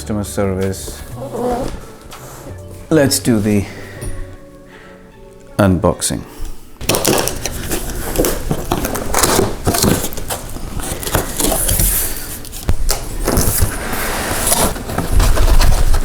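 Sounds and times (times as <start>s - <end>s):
cardboard packaging rustling: 6.8s - 16.0s.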